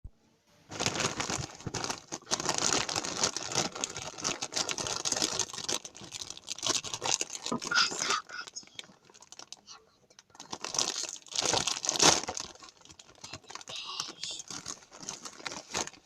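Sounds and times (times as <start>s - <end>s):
dense crinkling and rustling: 0.7s - 16.0s.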